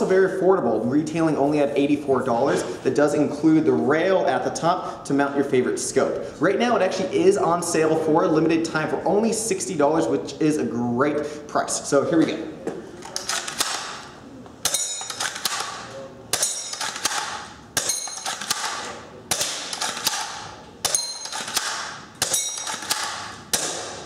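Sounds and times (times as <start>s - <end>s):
airsoft rifle shots: 13.2s - 24.0s
rifle bolt clicking: 16.7s - 23.7s.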